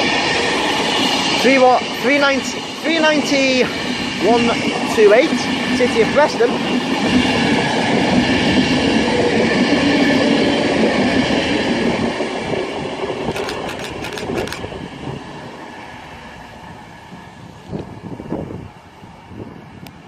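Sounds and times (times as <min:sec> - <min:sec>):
electric train passing slowly: 0:00.0 - 0:20.0
clicks: 0:13.3 - 0:14.6.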